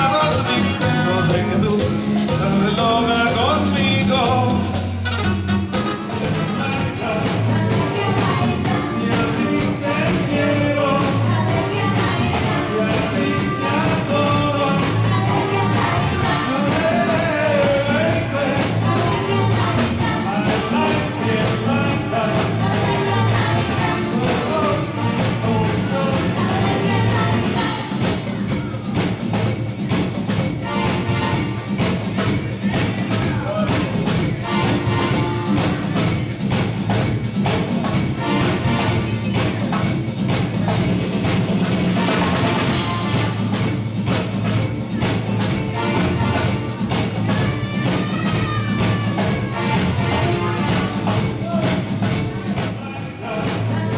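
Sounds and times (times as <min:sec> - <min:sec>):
person singing: 0:00.0 - 0:05.0, 0:06.1 - 0:28.8, 0:45.0 - 0:53.9
band playing upbeat music: 0:00.0 - 0:53.9
bass: 0:00.0 - 0:53.9
drum beat: 0:00.0 - 0:53.9.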